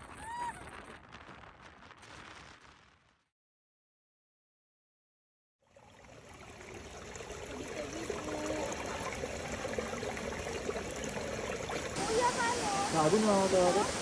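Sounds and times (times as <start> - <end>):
stream water rushing: 6.2 - 14.0.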